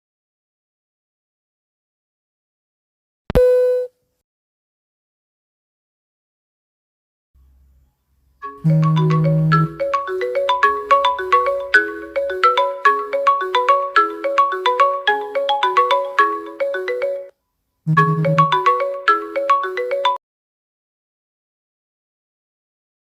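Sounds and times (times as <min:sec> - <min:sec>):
phone ringtone melody: 0:08.4 - 0:20.2.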